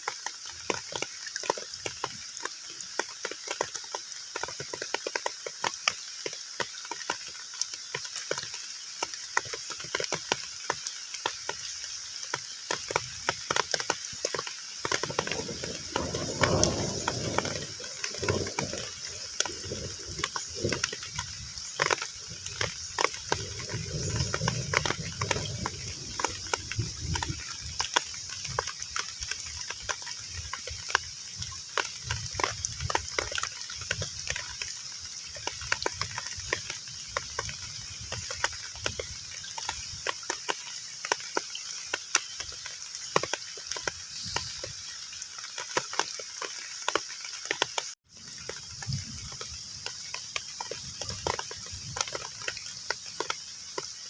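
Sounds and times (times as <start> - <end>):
heavy rain on a pond: 0.0 - 54.0.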